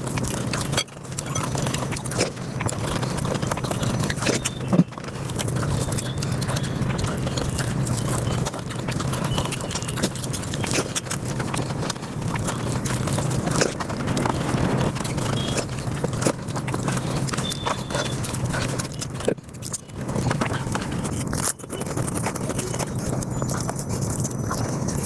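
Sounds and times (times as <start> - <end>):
fast chewing and lip-smacking: 0.0 - 25.0.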